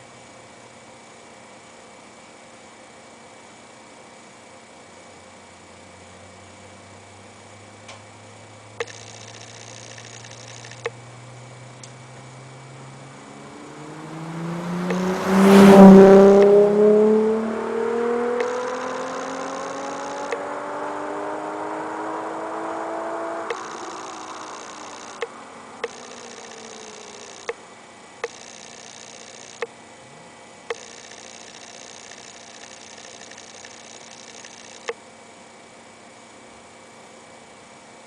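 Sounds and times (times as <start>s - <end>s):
car exhaust accelerating hard: 12.0s - 27.5s.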